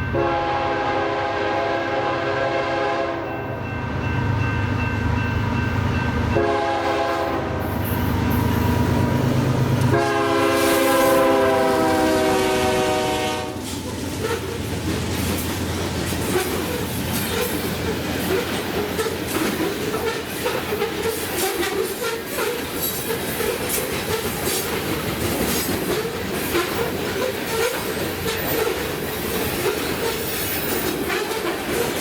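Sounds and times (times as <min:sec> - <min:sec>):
passing train rumble: 0:00.0 - 0:32.0
locomotive air horn blasts: 0:00.1 - 0:03.4, 0:06.4 - 0:07.8, 0:09.8 - 0:14.5.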